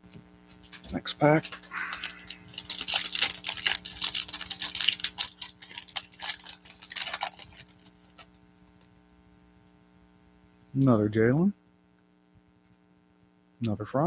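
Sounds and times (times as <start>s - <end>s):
card pack wrapper tearing and crinkling: 0.5s - 8.9s.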